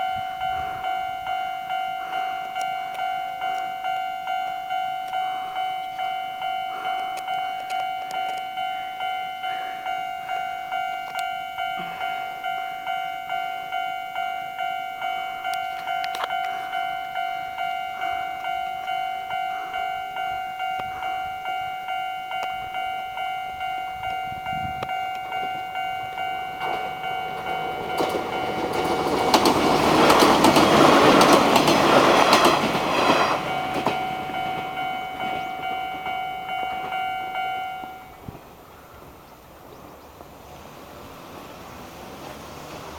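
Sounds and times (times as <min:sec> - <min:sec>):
level crossing bell dinging: 0:00.0 - 0:38.2
train wheels clattering over rail joints: 0:26.6 - 0:35.5.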